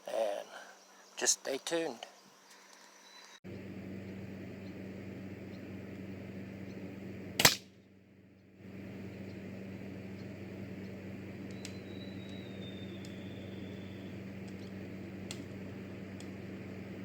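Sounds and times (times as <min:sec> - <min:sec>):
low hum and hiss: 0:03.1 - 0:17.0
air rifle firing crack: 0:07.4 - 0:07.7.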